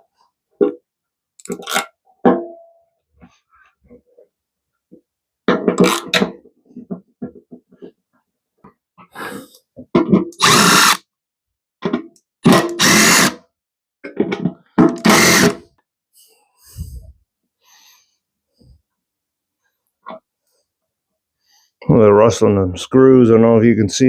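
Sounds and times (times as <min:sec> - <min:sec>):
cordless drill running: 0:10.4 - 0:11.0, 0:12.7 - 0:13.4, 0:15.0 - 0:15.6.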